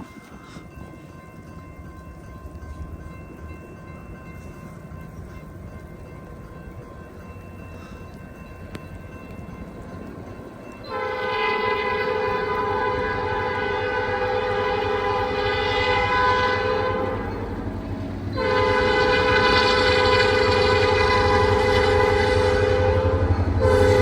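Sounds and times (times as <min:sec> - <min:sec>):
low train rumble: 0:00.0 - 0:24.0
locomotive air horn blasts: 0:10.8 - 0:17.6, 0:18.3 - 0:24.0.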